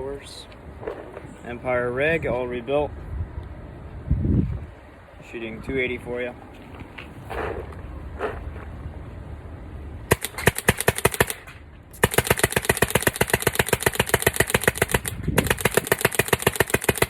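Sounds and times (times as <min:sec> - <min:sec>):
paintball marker firing rapidly: 0:10.1 - 0:17.0.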